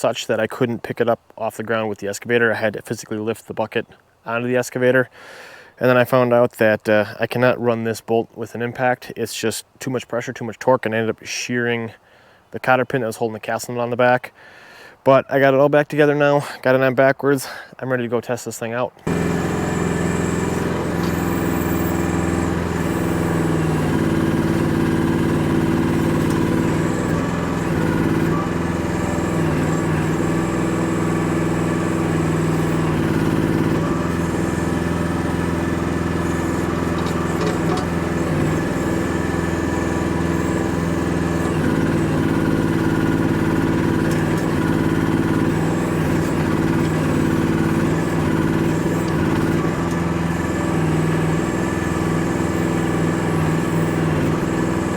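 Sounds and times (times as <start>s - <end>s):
small excavator engine running: 19.0s - 54.9s.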